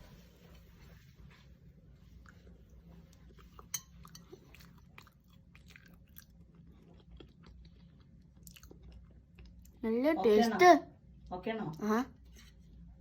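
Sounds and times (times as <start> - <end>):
chewing and biting crunchy snack: 3.1 - 9.8.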